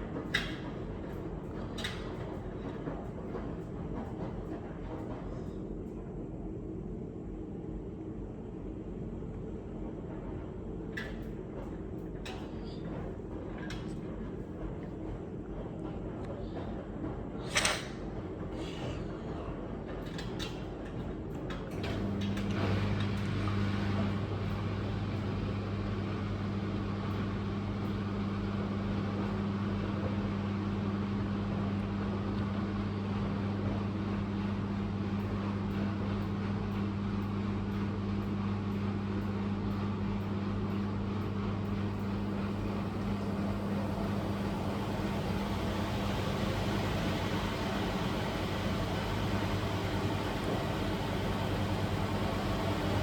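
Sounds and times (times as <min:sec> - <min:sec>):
laundry machine motor humming: 0:20.0 - 0:53.0.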